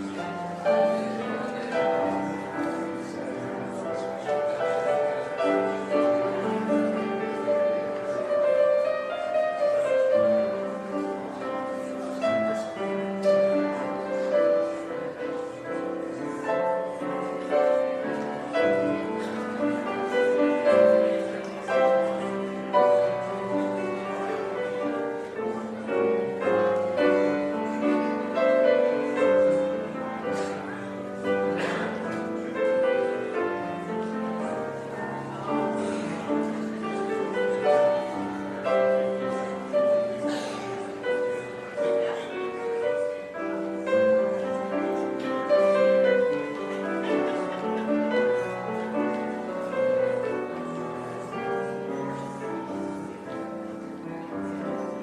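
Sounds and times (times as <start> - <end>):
piano piece: 0.0 - 55.0.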